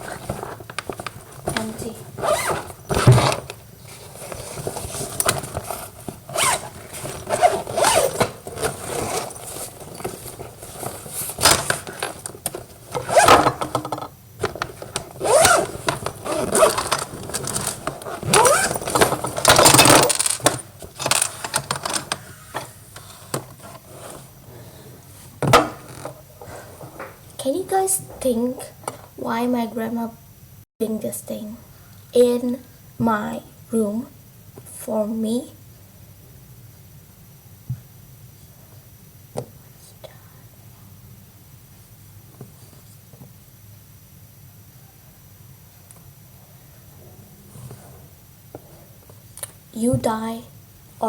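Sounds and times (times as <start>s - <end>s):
fabric and packaging rustling: 0.0s - 13.8s, 14.4s - 22.2s
zippers pulled: 1.5s - 3.5s, 4.1s - 12.2s, 12.9s - 13.6s, 15.2s - 21.3s.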